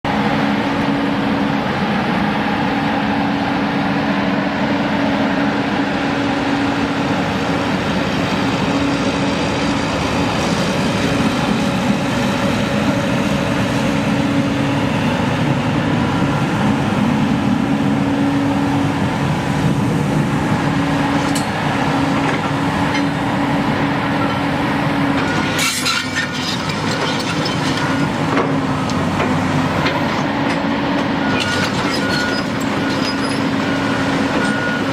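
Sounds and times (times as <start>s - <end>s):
diesel engine running: 0.0s - 34.9s
metallic clatter: 25.2s - 28.5s.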